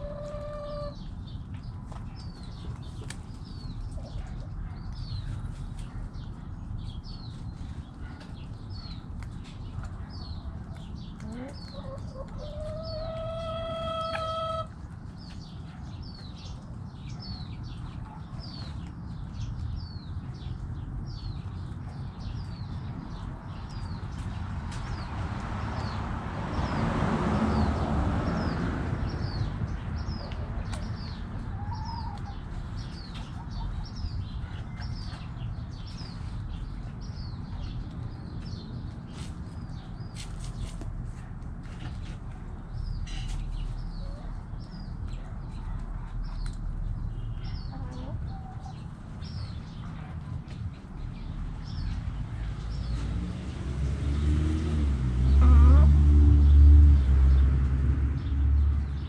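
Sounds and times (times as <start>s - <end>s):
hen clucking: 0.0s - 1.0s, 11.2s - 14.8s, 31.4s - 34.0s, 47.6s - 48.8s, 55.4s - 56.0s.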